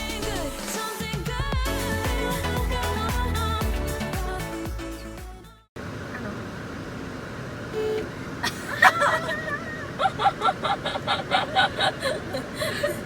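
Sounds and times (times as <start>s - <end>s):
people talking: 6.1s - 6.6s, 7.8s - 13.0s
bursts of laughter: 8.4s - 13.0s.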